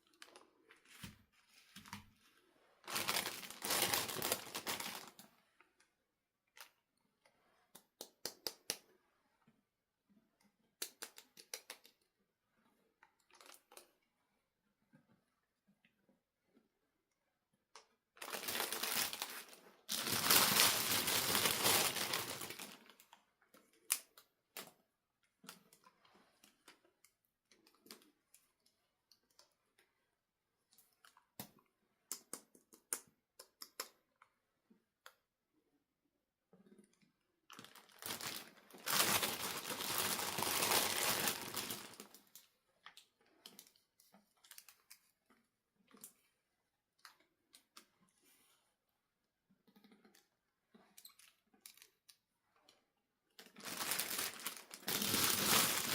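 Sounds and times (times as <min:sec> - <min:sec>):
packaging crinkling: 0:02.8 - 0:05.2, 0:18.2 - 0:23.1, 0:37.5 - 0:42.2, 0:53.4 - 0:55.9
small clicks and taps: 0:10.8 - 0:12.1, 0:30.7 - 0:34.3.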